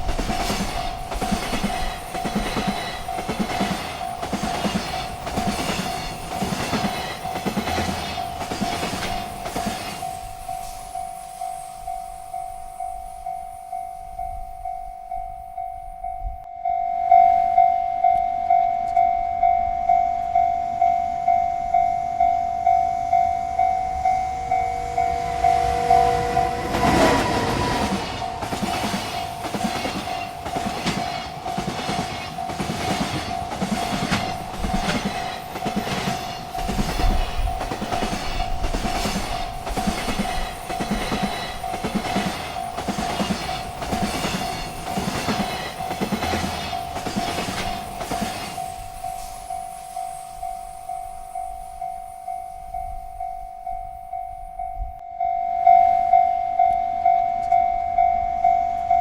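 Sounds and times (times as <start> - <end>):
train wheels clickety-clack: 0.0 - 13.7, 24.2 - 52.0
railroad crossing bell ringing: 0.0 - 59.0.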